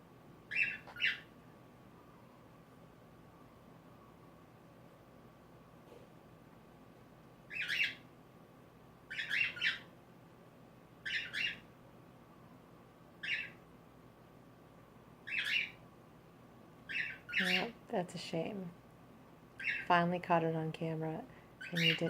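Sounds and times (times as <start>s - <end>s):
cockatiel squawking: 0.5s - 1.3s, 7.5s - 8.0s, 9.1s - 9.9s, 11.0s - 11.6s, 13.2s - 13.6s, 15.3s - 15.8s, 16.9s - 17.7s, 19.6s - 19.8s, 21.6s - 22.0s.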